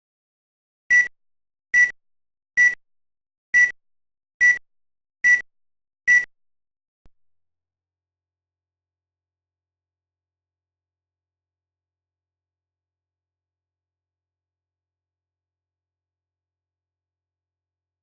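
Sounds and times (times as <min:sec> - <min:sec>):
short electronic beeps: 0:00.9 - 0:01.1, 0:02.6 - 0:02.8, 0:03.6 - 0:03.8, 0:05.2 - 0:05.4, 0:06.1 - 0:06.3.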